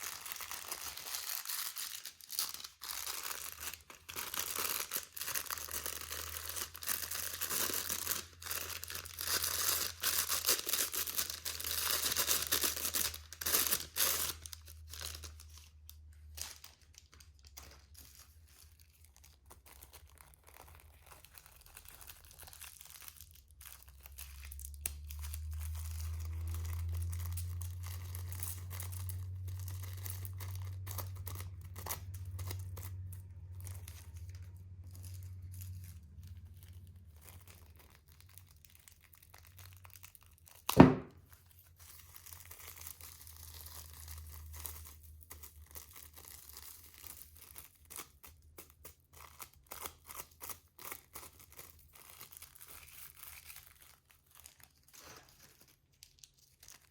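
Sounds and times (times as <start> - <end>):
plastic crinkling: 0.0 - 56.9
sticky slime crackling: 0.0 - 56.9
loud thump: 40.8 - 41.1.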